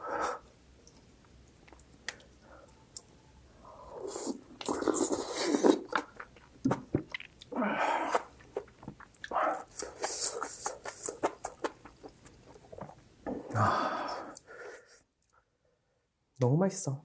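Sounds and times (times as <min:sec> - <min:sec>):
chewing and wet mouth noises: 0:00.8 - 0:03.2, 0:04.0 - 0:13.4.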